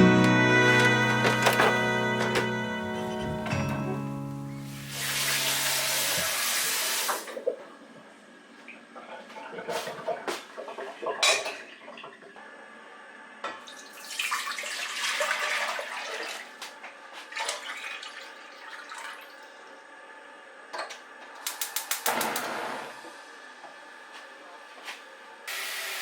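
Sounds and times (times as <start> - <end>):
utensils clicking and clinking: 0.6 - 2.6
kitchen tap running: 4.6 - 7.4, 13.7 - 16.5, 17.4 - 19.5, 25.5 - 26.0.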